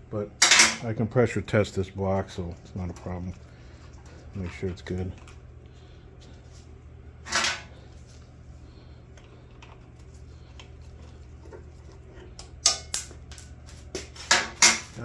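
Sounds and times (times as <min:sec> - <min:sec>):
steady low hum: 0:00.0 - 0:15.0
metal tools clinking: 0:12.6 - 0:13.6.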